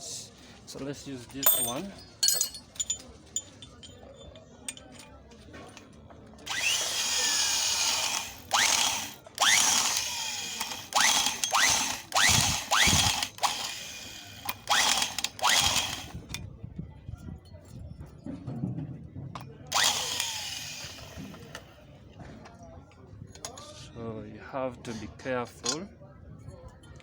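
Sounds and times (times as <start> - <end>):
electric drill whining: 6.5 - 16.2, 19.7 - 21.7.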